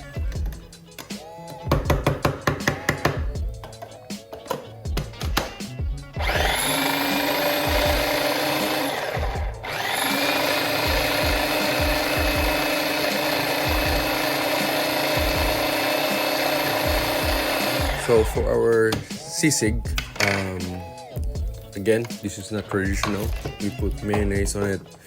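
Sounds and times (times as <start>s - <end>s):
electric food chopper running: 6.2s - 18.4s.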